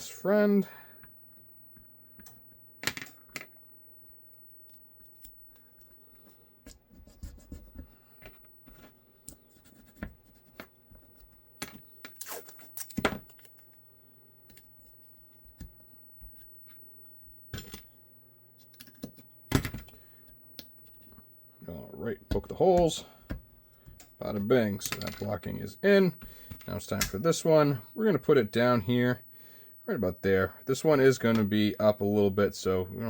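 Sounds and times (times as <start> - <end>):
scratches and crinkles: 5.0 - 13.8
tape pulled from a roll: 12.1 - 13.6.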